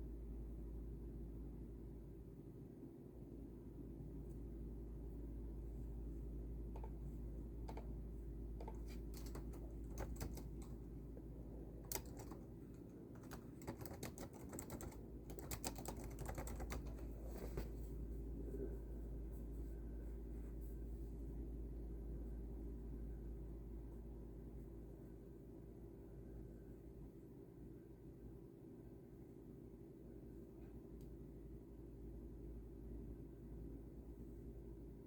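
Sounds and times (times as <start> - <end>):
steady low hum: 0.0 - 35.0
typing on a computer keyboard: 7.6 - 7.9, 8.6 - 10.8, 11.8 - 17.2.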